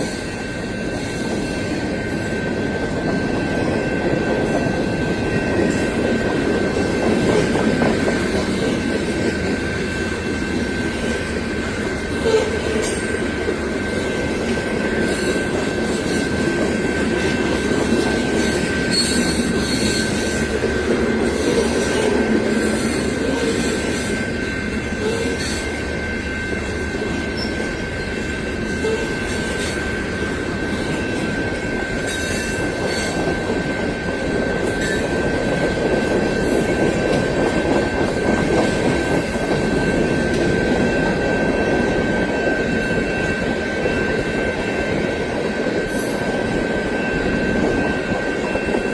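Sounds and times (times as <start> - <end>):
freight train rumbling: 0.0 - 48.9
high-pitched wheel squeal: 18.4 - 20.5, 27.2 - 29.8.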